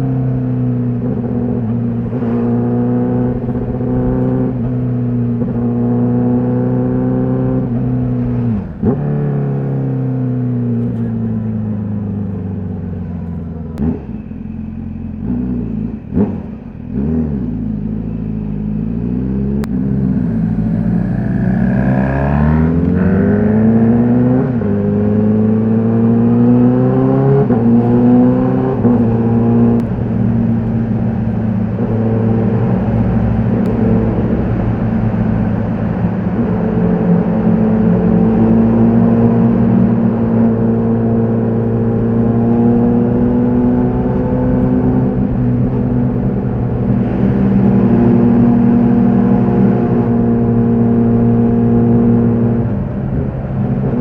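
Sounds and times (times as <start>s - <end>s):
motorcycle accelerating with upshifts: 0.0s - 54.0s
motorcycle engine revving: 0.0s - 54.0s.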